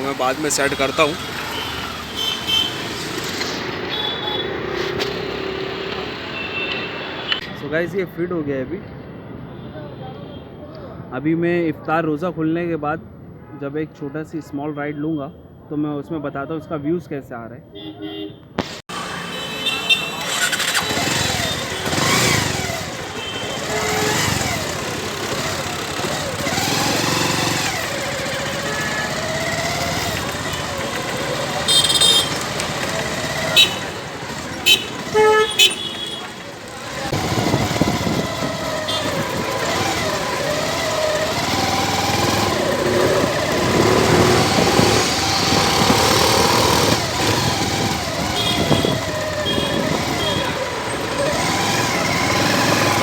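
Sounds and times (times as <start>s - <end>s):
motorcycle engine revving: 0.0s - 6.4s, 18.6s - 53.0s
street noise: 0.0s - 53.0s.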